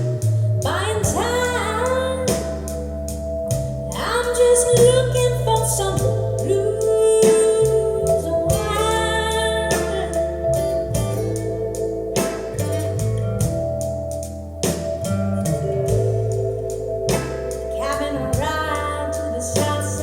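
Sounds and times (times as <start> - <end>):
person singing: 0.0 - 2.8, 3.9 - 10.6, 17.8 - 20.0
bass line: 0.0 - 20.0
guitar: 0.0 - 20.0.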